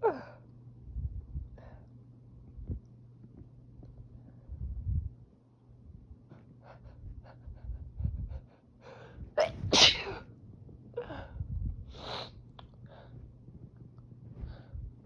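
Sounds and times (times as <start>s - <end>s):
person sneezing: 9.4s - 10.2s.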